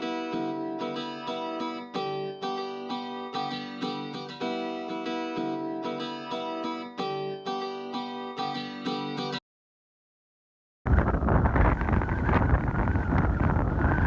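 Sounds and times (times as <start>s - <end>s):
plucked guitar music: 0.0s - 9.4s.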